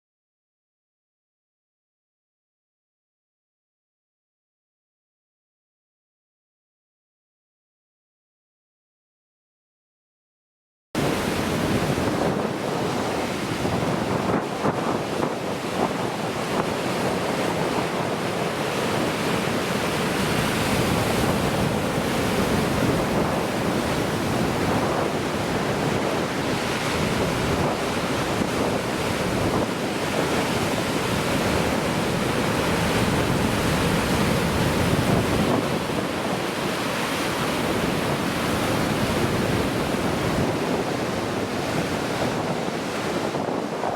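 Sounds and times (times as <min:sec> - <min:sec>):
heavy surf breaking on rocks: 0:11.0 - 0:43.9
wind buffeting microphone: 0:11.0 - 0:43.9.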